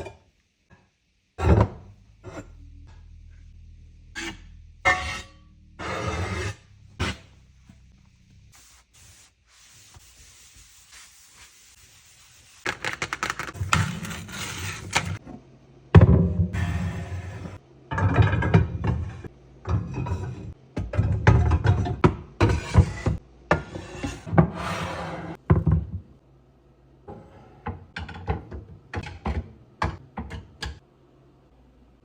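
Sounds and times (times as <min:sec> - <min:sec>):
pots and pans clattering: 0:17.9 - 0:24.5.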